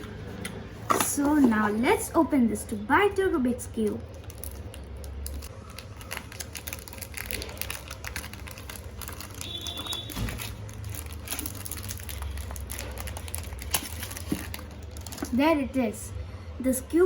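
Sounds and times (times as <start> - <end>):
packaging box clicks and crinkling: 4.2 - 15.4.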